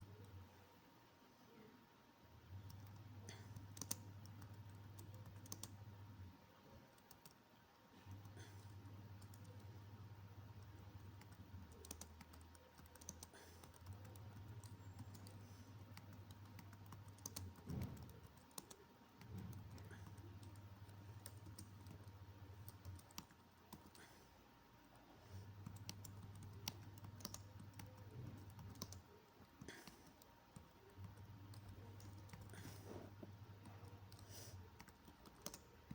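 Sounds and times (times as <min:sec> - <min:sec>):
keyboard keystroke clicks: 0:02.6 - 0:05.7, 0:10.7 - 0:20.6, 0:25.6 - 0:29.0.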